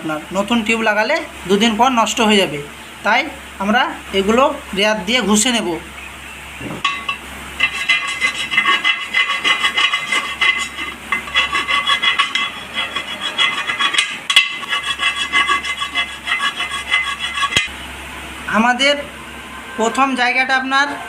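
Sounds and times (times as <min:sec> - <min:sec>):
hand file rasping on metal rim: 0:07.6 - 0:17.7.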